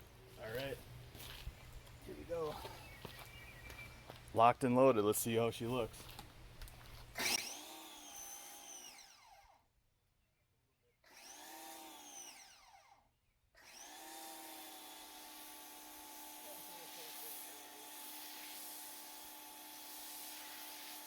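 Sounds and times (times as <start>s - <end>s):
water spray hiss: 16.5s - 21.0s.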